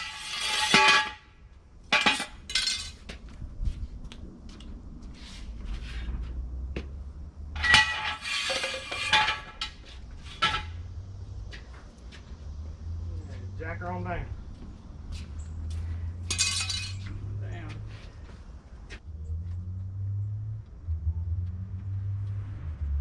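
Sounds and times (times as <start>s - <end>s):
metal tools clanking: 0.0s - 1.2s, 1.9s - 3.0s, 7.6s - 10.8s, 16.2s - 17.1s.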